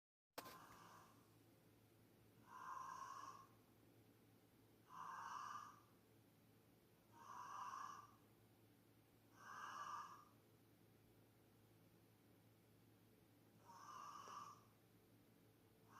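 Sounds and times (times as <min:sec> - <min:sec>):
faint snoring: 0:00.5 - 0:01.2, 0:02.4 - 0:03.6, 0:04.8 - 0:05.9, 0:07.1 - 0:08.2, 0:09.3 - 0:10.4, 0:13.6 - 0:14.8.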